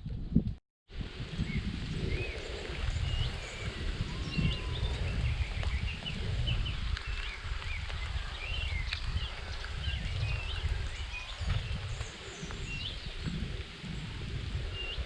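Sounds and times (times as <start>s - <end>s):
wind rumble on microphone: 0.0s - 15.0s
small birds chirping: 1.4s - 15.0s.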